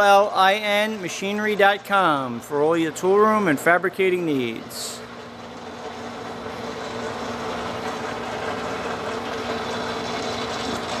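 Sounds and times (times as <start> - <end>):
milling machine motor hum: 0.0 - 11.0
gear and drive noise: 4.6 - 11.0.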